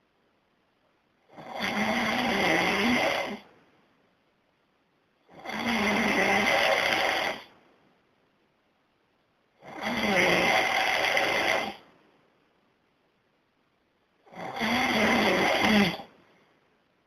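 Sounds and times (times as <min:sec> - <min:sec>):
person snoring loudly: 0:01.3 - 0:03.5, 0:05.3 - 0:07.5, 0:09.6 - 0:11.8, 0:14.3 - 0:16.1.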